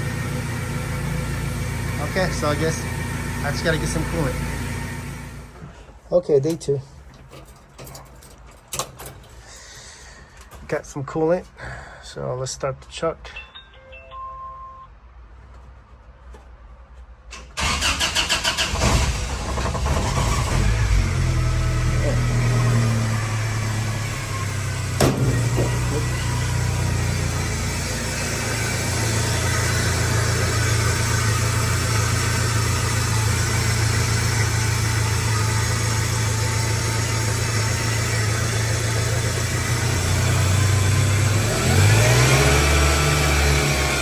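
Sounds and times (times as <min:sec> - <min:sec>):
car engine idling: 0:00.0 - 0:06.0, 0:17.6 - 0:44.0.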